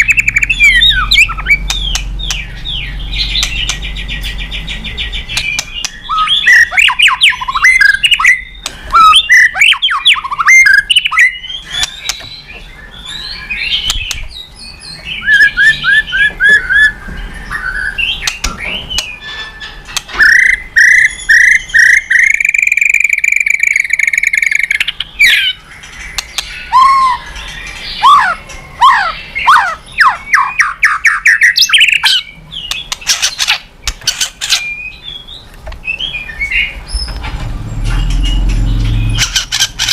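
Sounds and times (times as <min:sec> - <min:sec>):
bird singing whistles and trills: 0:00.0 - 0:33.6, 0:34.2 - 0:37.2.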